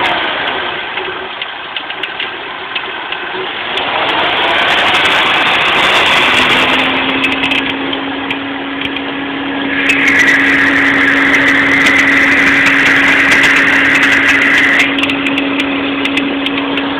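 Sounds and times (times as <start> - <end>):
car engine running: 0.0 - 16.9
steady pulley whine: 0.0 - 16.9
high belt squeal: 9.6 - 15.7.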